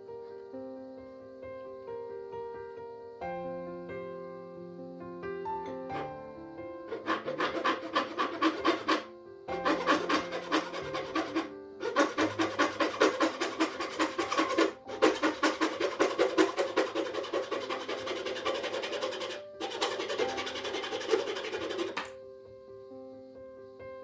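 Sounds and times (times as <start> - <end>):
background piano music: 0.0 - 24.0
rhythmic scraping on wood: 5.9 - 6.2, 6.8 - 22.2.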